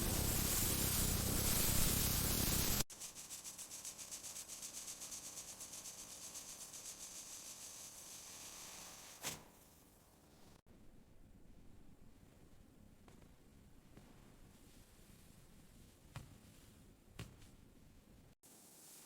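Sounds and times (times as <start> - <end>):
steady hiss: 0.0 - 10.6, 18.4 - 19.0.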